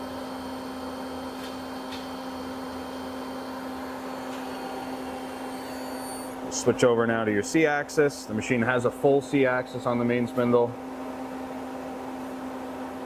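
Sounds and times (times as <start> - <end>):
lathe spindle hum: 0.0 - 13.0.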